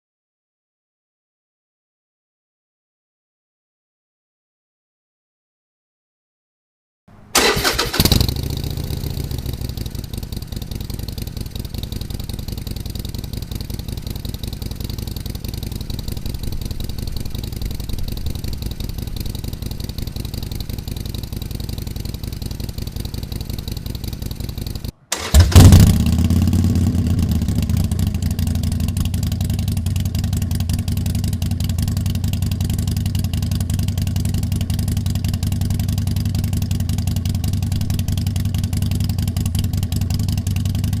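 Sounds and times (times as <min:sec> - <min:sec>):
motorcycle engine idling: 0:07.1 - 0:41.0.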